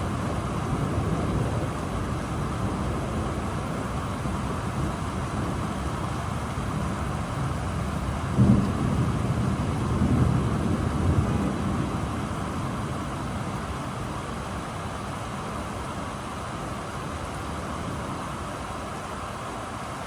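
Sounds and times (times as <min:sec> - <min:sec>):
thunder rumbling: 0:00.0 - 0:15.2
steady rain: 0:00.0 - 0:20.0.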